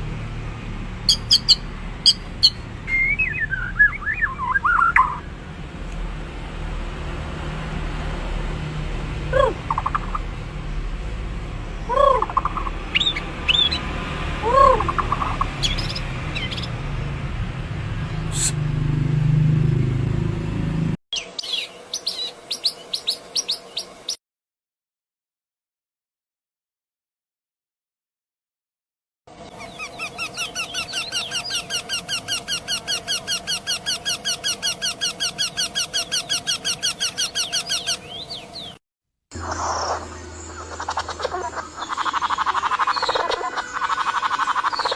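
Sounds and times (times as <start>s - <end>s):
steady low hum: 0.0s - 21.0s
bird calling low arched notes: 1.0s - 5.4s, 9.2s - 10.4s, 11.6s - 16.8s, 29.5s - 38.8s
high bird chirps: 1.0s - 5.4s, 9.3s - 10.3s, 11.8s - 13.9s, 14.5s - 16.8s, 29.5s - 38.8s.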